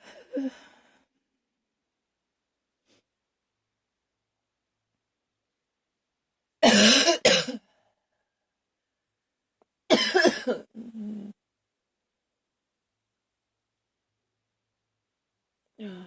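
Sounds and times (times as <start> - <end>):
woman coughing: 6.6 - 7.6, 9.9 - 10.8.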